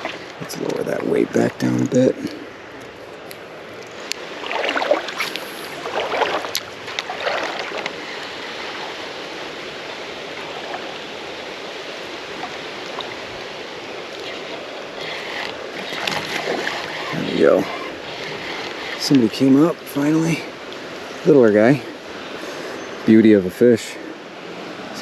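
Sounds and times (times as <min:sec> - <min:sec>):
creek water rushing: 0:00.0 - 0:25.0
water sloshing splashes: 0:03.9 - 0:19.8.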